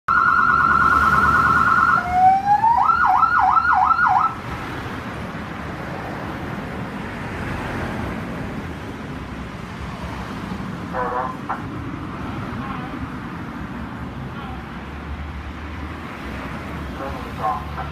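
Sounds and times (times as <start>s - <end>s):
electronic emergency siren: 0.1s - 4.4s
steady background noise: 0.1s - 17.9s.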